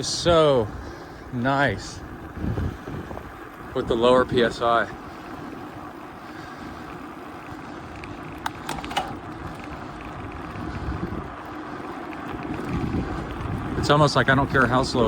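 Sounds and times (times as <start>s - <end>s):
bike tyre rumble: 0.0s - 15.0s
wind buffeting microphone: 0.0s - 15.0s
brief clicks or rattles: 8.4s - 9.2s.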